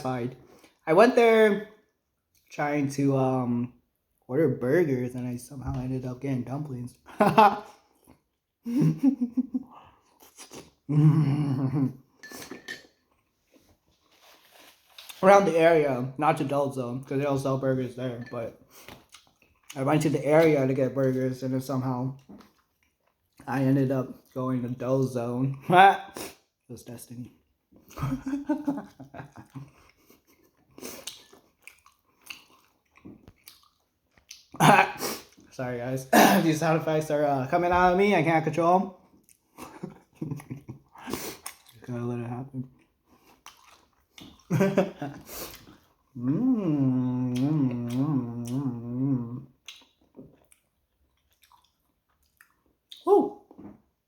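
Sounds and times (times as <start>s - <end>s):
man humming mmm while eating: 10.9s - 11.9s, 46.2s - 49.6s
person chewing food: 18.7s - 19.8s, 22.2s - 23.5s, 28.6s - 35.5s, 39.1s - 41.8s, 42.7s - 44.5s, 45.1s - 53.9s
faint mouth noises: 45.4s - 50.6s.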